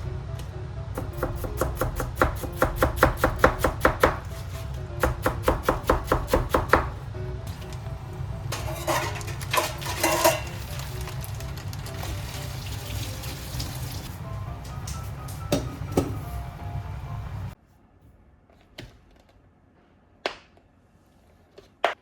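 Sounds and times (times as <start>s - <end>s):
background music: 0.0s - 17.6s
knife chopping on cutting board: 1.1s - 4.4s, 5.0s - 6.9s.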